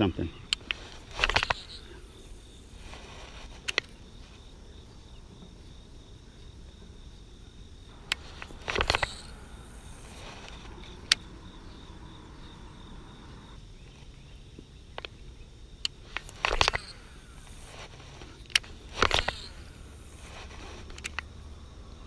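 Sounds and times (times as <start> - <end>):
crickets chirring: 0.0 - 22.0
outdoor background noise: 0.0 - 22.0
sharp clicks: 0.4 - 2.6, 3.5 - 4.0, 7.9 - 11.4, 15.8 - 21.4.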